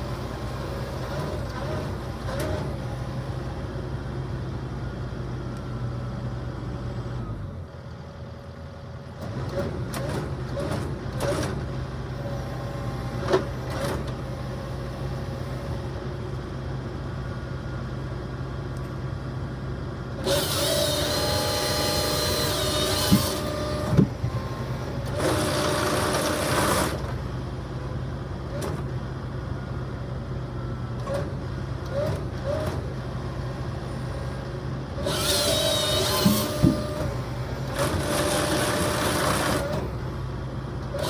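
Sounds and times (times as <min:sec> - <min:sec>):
engine running: 0:00.0 - 0:41.0
saw cutting logs: 0:00.9 - 0:02.9, 0:20.2 - 0:27.2, 0:35.0 - 0:40.0.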